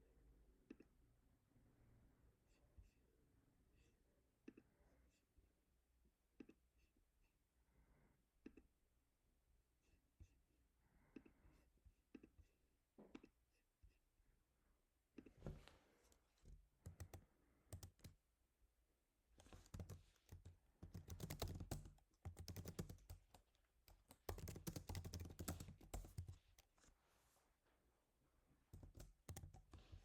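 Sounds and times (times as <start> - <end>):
typing on computer keyboard: 16.8 - 18.2, 19.4 - 26.7, 28.7 - 30.0.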